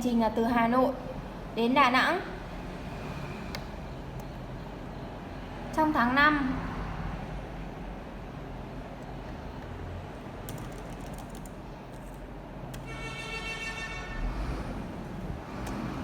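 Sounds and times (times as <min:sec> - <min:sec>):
low traffic rumble: 0:00.0 - 0:16.0
vehicle horn: 0:12.8 - 0:14.4.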